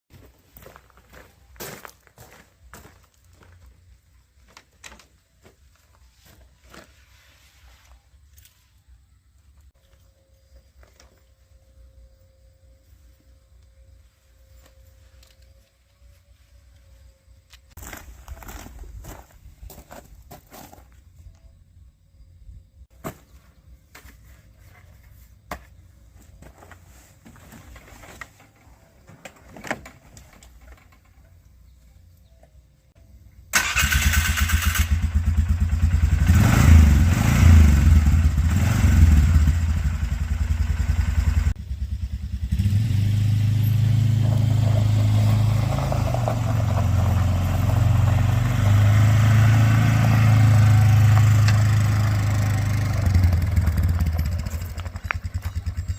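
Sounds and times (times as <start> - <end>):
vehicle engine starting and revving: 33.5 - 55.9.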